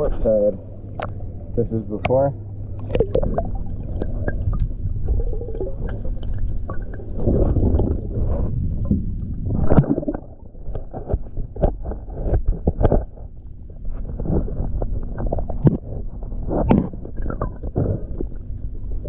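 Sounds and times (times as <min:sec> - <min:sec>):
diver exhaust bubbling: 0:00.0 - 0:10.7
underwater low rumble: 0:00.0 - 0:19.0.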